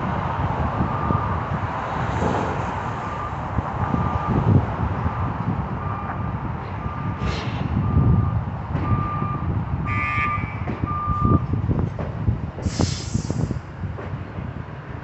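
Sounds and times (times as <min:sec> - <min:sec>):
diesel engine rumble: 0:00.0 - 0:15.0
backup alarm beeping: 0:07.8 - 0:11.4
short hiss of air: 0:12.6 - 0:13.6.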